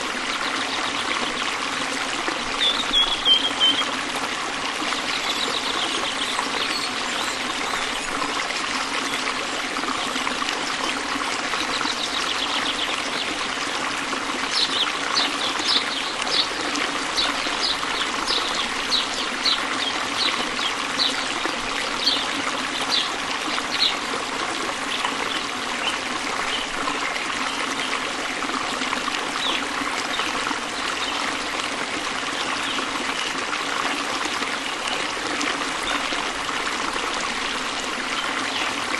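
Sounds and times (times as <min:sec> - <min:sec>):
stream trickling: 0:00.0 - 0:38.9
bird chirping: 0:02.6 - 0:03.9.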